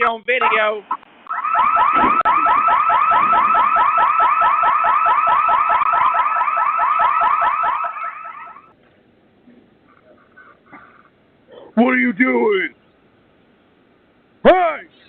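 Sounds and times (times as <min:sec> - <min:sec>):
electronic alarm siren warbling: 0:00.5 - 0:08.7.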